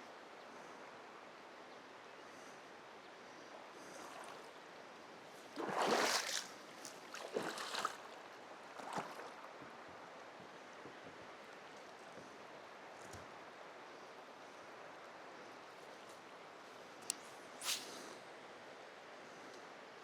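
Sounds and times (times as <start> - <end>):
paddle splashes: 5.4 - 9.6
river water washing: 5.4 - 9.7.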